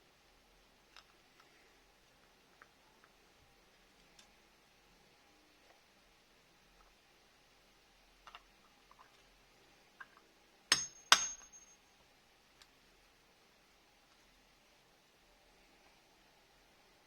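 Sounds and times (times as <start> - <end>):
sharp metallic clinks: 10.7 - 11.8.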